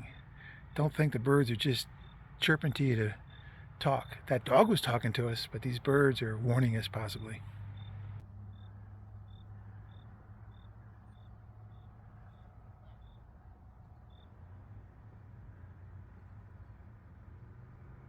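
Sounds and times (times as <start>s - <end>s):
bird chirping: 0.0s - 13.3s
faint low hum: 0.0s - 18.0s.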